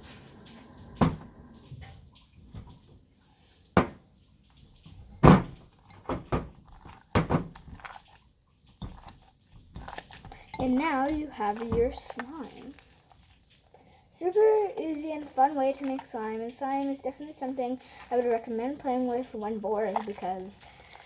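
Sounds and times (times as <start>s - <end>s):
sharp knocks and wet pops: 3.6s - 15.0s, 17.9s - 21.0s
slime being mixed in a bowl: 4.5s - 21.0s.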